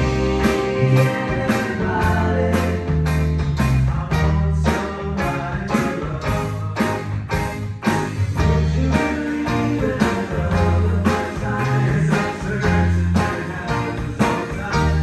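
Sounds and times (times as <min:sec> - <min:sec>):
steady drum beat: 0:00.0 - 0:03.9
electric guitar: 0:00.0 - 0:15.0
held bass notes: 0:00.0 - 0:15.0.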